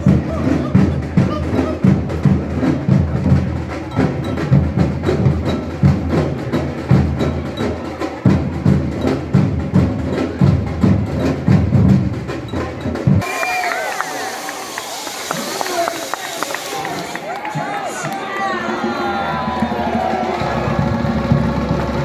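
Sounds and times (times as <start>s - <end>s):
deep drum beats: 0.0s - 13.3s, 18.6s - 22.0s.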